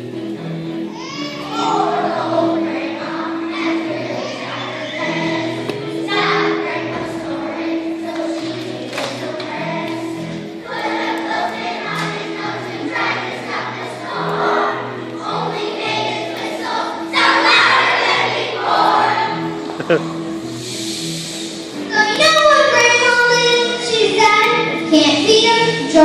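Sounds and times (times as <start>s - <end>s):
instrumental accompaniment: 0.0s - 26.0s
choir singing: 1.4s - 22.0s.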